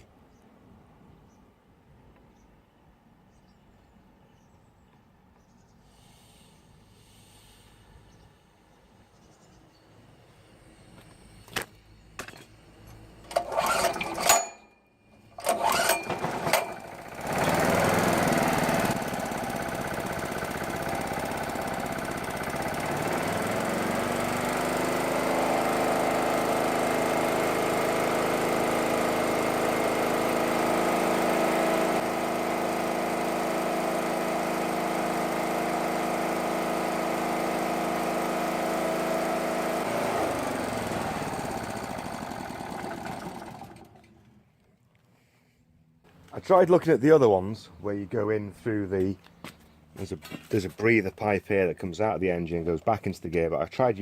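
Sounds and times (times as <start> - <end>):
small generator engine running: 9.9 - 44.6
pull-start cord yanks: 13.2 - 44.4.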